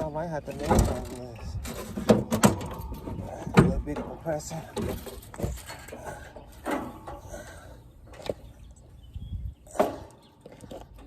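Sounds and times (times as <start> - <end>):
knocks and thumps of handled unit: 0.5 - 7.2.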